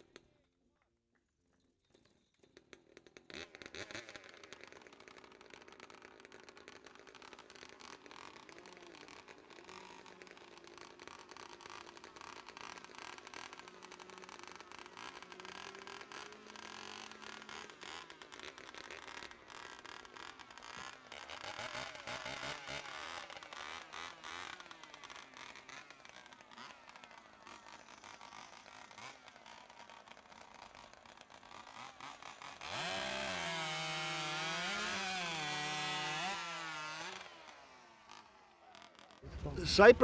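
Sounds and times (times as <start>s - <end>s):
chainsaws cutting logs: 2.8s - 40.0s.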